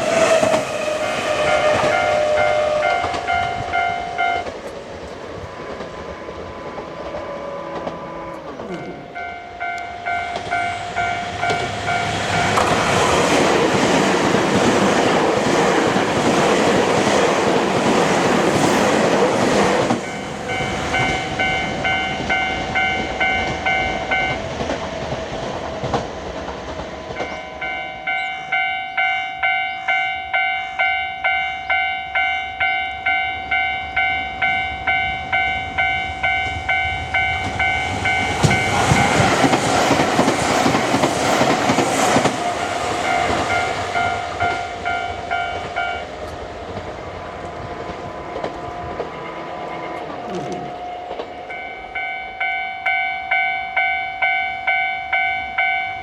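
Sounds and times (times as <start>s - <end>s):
train passing over crossing: 0.0s - 56.0s
level crossing warning bell: 1.4s - 4.7s, 5.4s - 18.0s, 18.9s - 25.5s, 27.0s - 46.4s, 47.4s - 56.0s.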